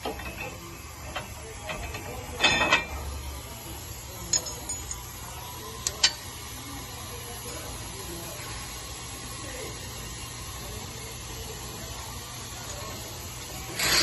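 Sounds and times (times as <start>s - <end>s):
metal hardware clinking and knocking: 0.0s - 3.1s, 4.3s - 5.0s.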